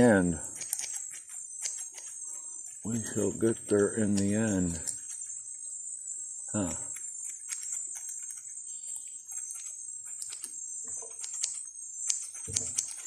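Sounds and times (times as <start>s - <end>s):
high insect drone: 0.0s - 13.0s
scissors snipping hair: 0.6s - 2.2s, 4.0s - 5.2s, 11.2s - 13.0s.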